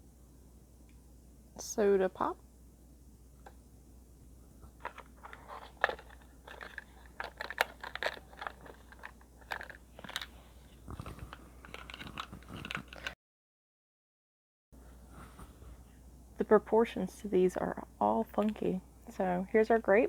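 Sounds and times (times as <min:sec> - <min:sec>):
plastic packaging crinkling: 0:04.8 - 0:13.2.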